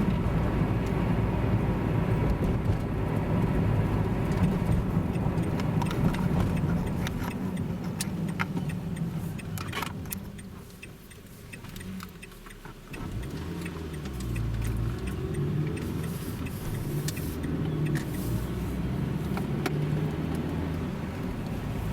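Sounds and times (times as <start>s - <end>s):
car engine while driving: 0.0s - 21.9s
road noise: 0.0s - 21.9s
faint clicks and rattles: 2.3s - 18.6s.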